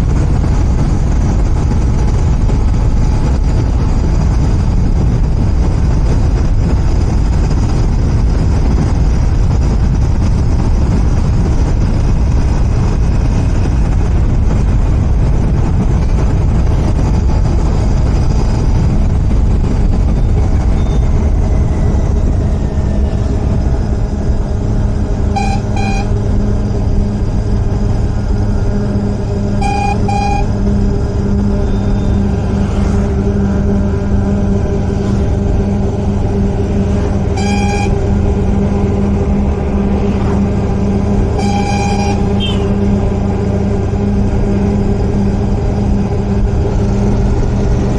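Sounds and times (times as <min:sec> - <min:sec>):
motorcycle engine running: 0:00.0 - 0:47.9
wind and road noise: 0:00.0 - 0:47.9
horn toots: 0:25.3 - 0:26.2, 0:29.6 - 0:30.6, 0:37.2 - 0:38.3, 0:41.3 - 0:43.0.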